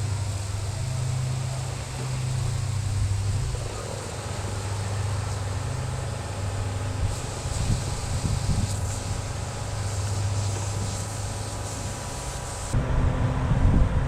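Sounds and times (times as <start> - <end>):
vent cleaning motor humming: 0.0 - 13.0.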